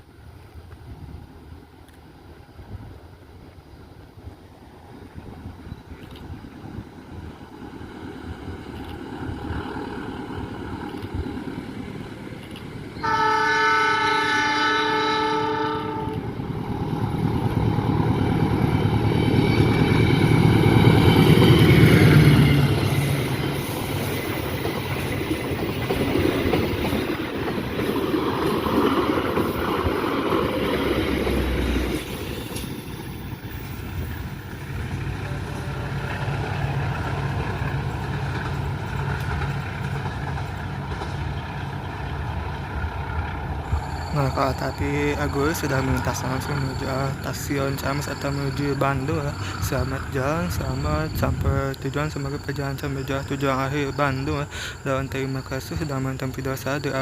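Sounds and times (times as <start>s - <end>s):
train passing at speed: 0.0s - 57.0s
train horn blast: 13.0s - 16.3s, 35.2s - 36.4s.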